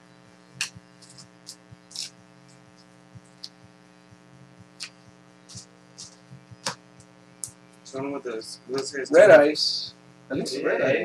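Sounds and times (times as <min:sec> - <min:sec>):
steady electrical hum: 0:00.0 - 0:11.0
scratchy rustles of cards: 0:00.4 - 0:08.0.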